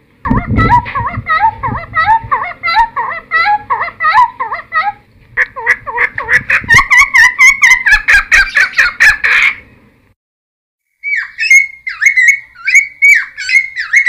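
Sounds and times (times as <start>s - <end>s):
bird squawky song: 0.3s - 9.8s, 11.0s - 14.0s.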